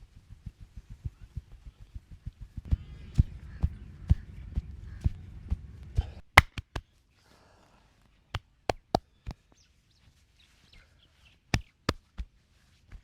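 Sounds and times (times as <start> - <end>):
massage slaps: 6.4 - 6.9, 8.4 - 9.0, 11.5 - 12.3.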